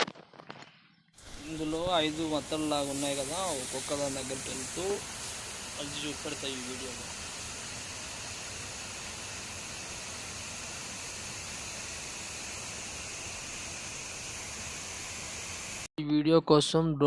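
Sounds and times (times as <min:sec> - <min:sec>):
water rushing down waterfall: 0:01.4 - 0:12.8.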